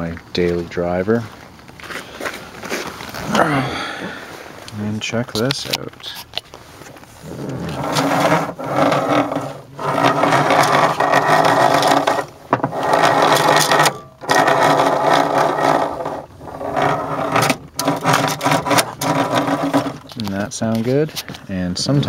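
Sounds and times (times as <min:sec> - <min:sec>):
seatbelt retractor grinding: 0:07.2 - 0:20.3.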